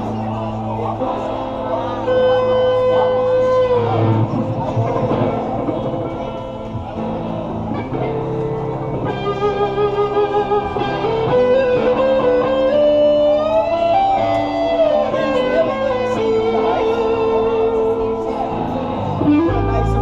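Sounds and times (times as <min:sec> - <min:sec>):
electric guitar gliding notes: 0:00.0 - 0:20.0
live rock band playing: 0:19.1 - 0:20.0.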